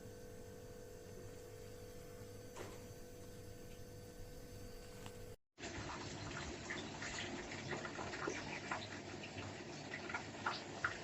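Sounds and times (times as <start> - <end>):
steady electrical hum: 0.0 - 5.4.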